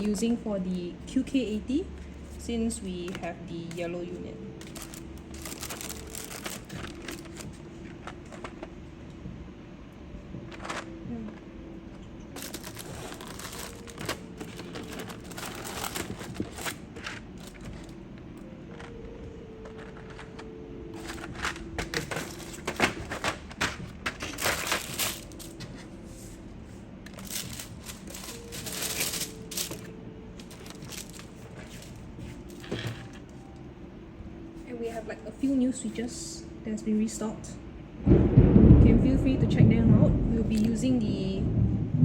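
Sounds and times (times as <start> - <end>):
packaging crinkling and rustling: 4.5 - 8.8, 10.4 - 11.4, 12.3 - 26.0, 27.0 - 33.6.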